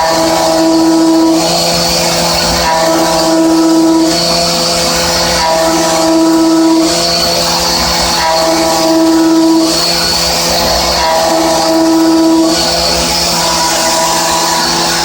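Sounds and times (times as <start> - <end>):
milling machine cutting: 0.0 - 15.0.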